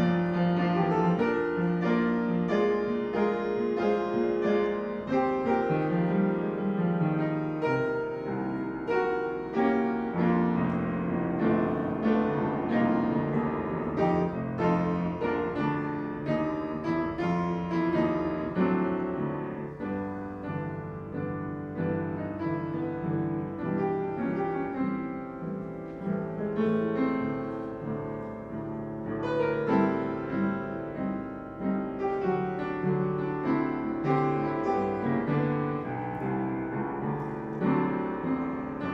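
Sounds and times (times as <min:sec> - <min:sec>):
piano music: 0:00.0 - 0:38.9.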